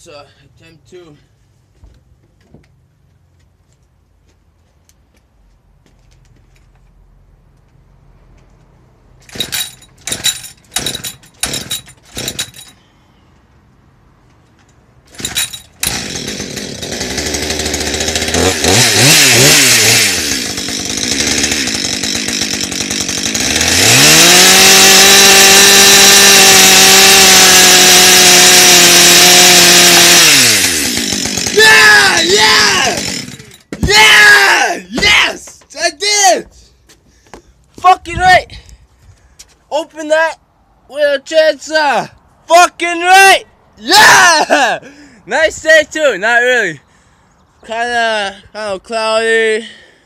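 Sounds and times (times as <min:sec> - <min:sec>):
chainsaw engine idling and revving: 0:09.2 - 0:12.7, 0:15.1 - 0:33.7
chainsaw starter cord pulls: 0:09.2 - 0:12.8, 0:15.1 - 0:33.8.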